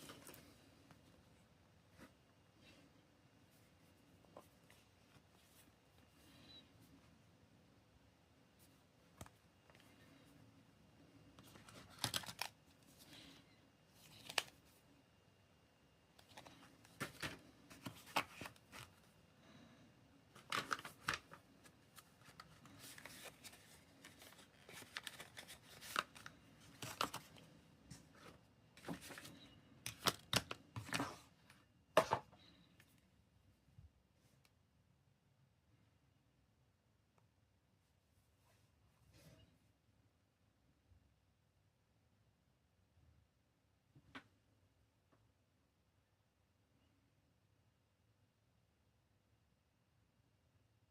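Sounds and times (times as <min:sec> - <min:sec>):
packaging rustling and scraping: 0:11.4 - 0:13.3, 0:20.4 - 0:31.3.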